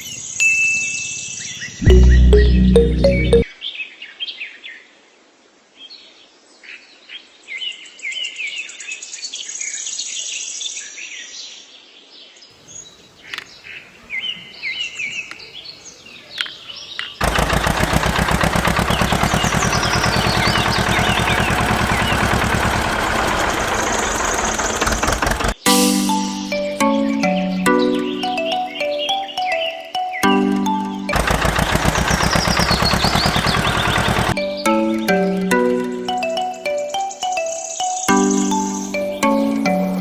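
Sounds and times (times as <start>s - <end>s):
machine rattling rapidly: 17.2s - 24.0s.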